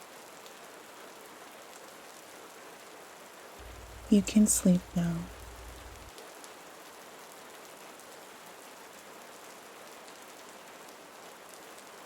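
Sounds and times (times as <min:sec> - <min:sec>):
steady rain hiss: 0:00.0 - 0:12.0
raindrops ticking: 0:03.6 - 0:06.1.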